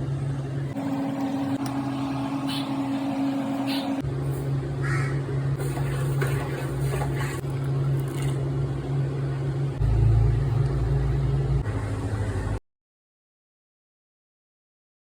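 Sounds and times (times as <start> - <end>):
kitchen appliance motor hum: 0.0 - 4.1.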